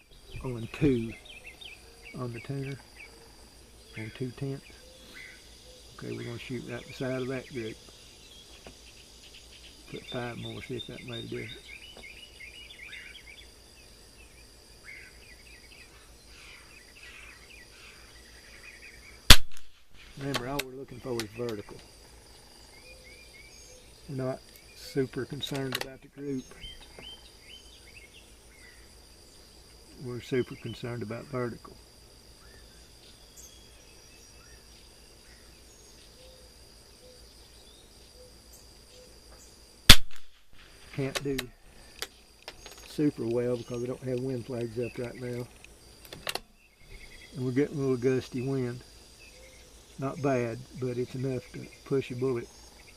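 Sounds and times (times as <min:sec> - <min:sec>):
insect trill: 0:00.0 - 0:52.9
small birds chirping: 0:00.0 - 0:52.9.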